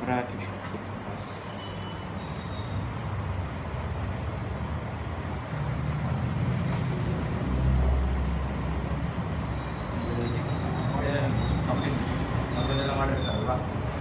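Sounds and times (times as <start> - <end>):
short faint hiss: 6.6 - 7.0.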